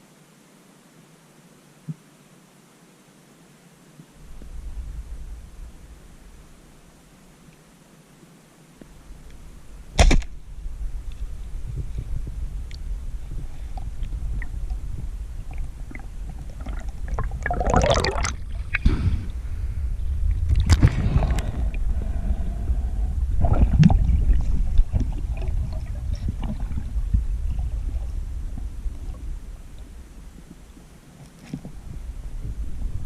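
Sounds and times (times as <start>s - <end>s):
steady low rumble: 4.2s - 7.4s, 8.8s - 31.0s, 31.7s - 33.0s
water gurgling and sloshing: 8.9s - 33.0s.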